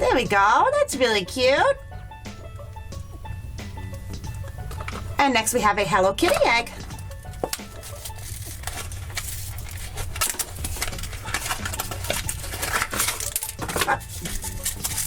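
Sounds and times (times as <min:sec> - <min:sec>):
foil wrapper crinkling: 0:07.0 - 0:15.0.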